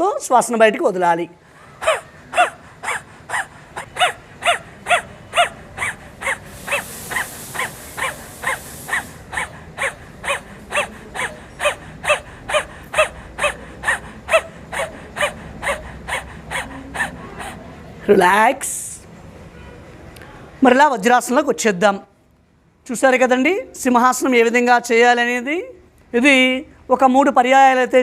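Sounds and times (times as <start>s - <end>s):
hiss: 6.3s - 9.5s.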